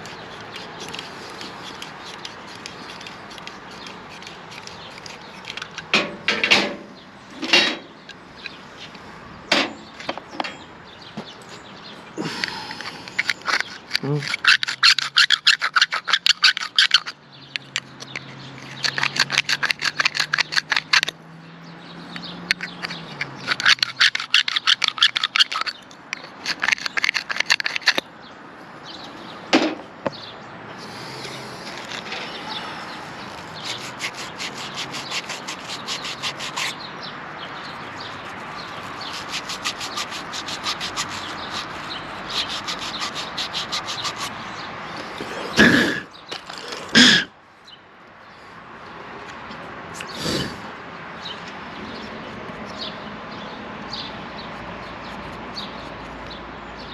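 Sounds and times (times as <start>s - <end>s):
abrasive scraping on copper pipe: 0.0s - 8.6s, 12.2s - 21.1s, 22.5s - 28.0s, 30.8s - 36.8s, 37.5s - 47.2s.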